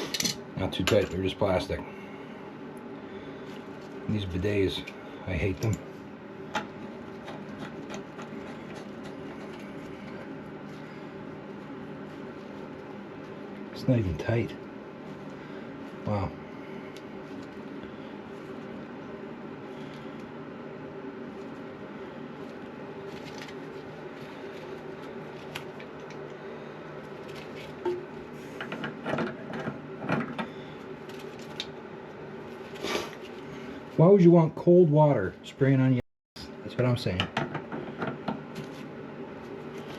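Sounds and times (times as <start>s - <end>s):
steady low hum: 0.0s - 39.9s.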